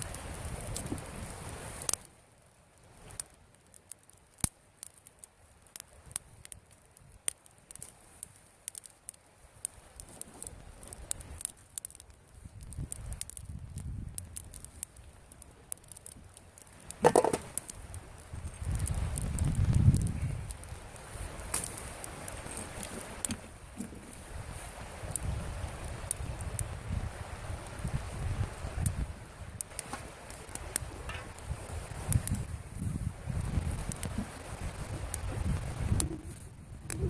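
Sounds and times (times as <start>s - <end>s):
campfire crackling and popping: 0.0s - 37.0s.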